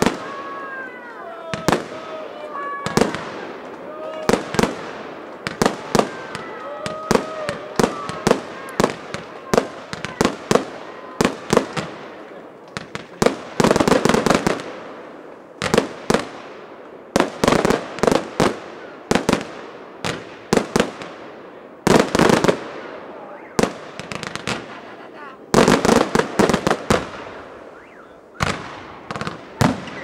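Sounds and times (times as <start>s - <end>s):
fireworks bangs: 0.0s - 30.0s
fireworks crackling bursts: 0.0s - 30.0s.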